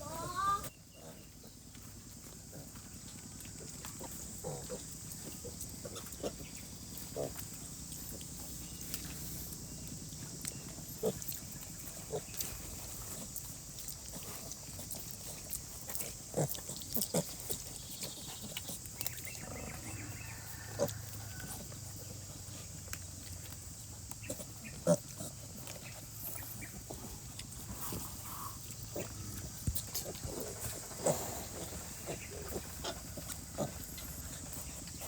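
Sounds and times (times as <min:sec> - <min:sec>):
pigs grunting: 0:00.0 - 0:35.0
steady background hiss: 0:00.0 - 0:35.0.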